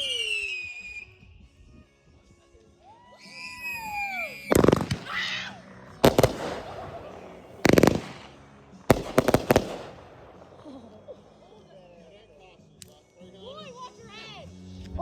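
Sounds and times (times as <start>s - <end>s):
fireworks bangs: 3.6s - 11.2s.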